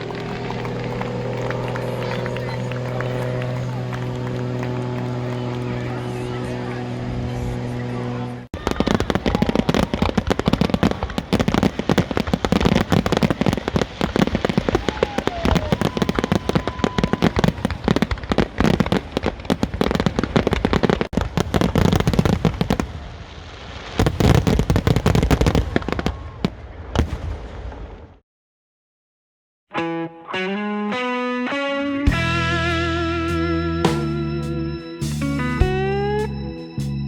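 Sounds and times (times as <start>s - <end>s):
fireworks bangs and crackles: 0.0s - 7.7s, 8.6s - 28.2s.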